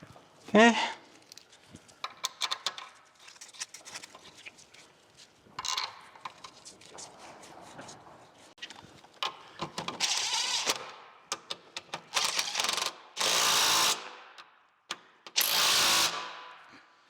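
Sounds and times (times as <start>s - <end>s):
ratchet clicking: 11.4s - 14.0s, 15.3s - 16.3s.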